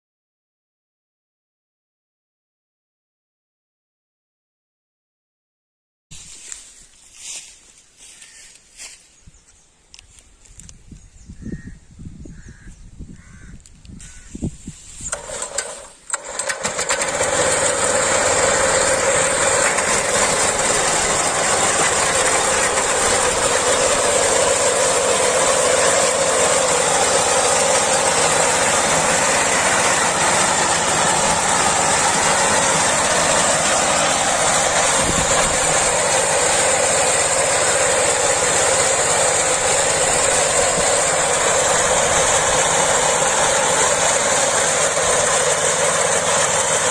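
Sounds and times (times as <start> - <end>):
harvesting machine running: 14.9 - 46.9.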